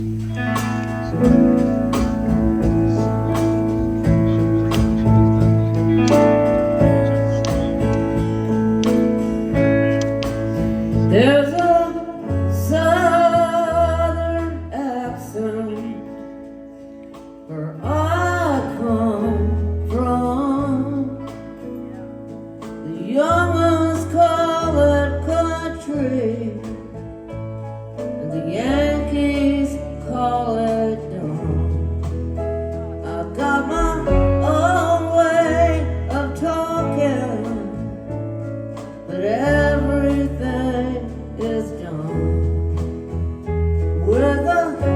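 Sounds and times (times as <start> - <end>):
bass line: 0.0 - 16.1, 17.8 - 44.9
person singing: 0.0 - 16.2, 33.0 - 38.1, 44.0 - 44.9
guitars: 0.0 - 44.9.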